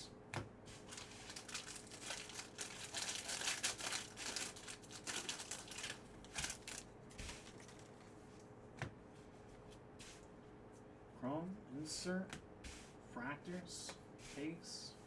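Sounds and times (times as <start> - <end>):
foil wrapper crinkling: 0.9 - 8.0.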